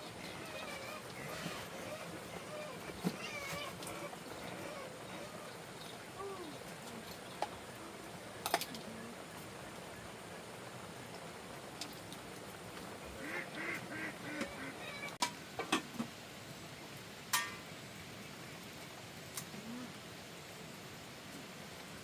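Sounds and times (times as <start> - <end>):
rain hiss: 0.0 - 22.0
duck quacking: 13.2 - 14.9.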